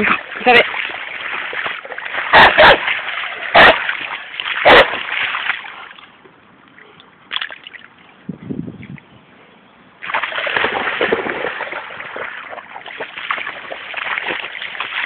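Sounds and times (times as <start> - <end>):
splashing through shallow water: 0.0 - 6.2, 7.3 - 8.0, 10.0 - 15.0.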